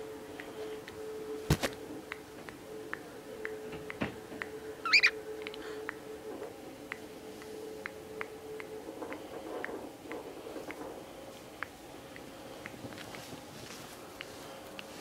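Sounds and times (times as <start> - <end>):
steady low tone: 0.0 - 15.0
budgie rising call: 4.8 - 5.2
budgies chirping: 4.8 - 5.2.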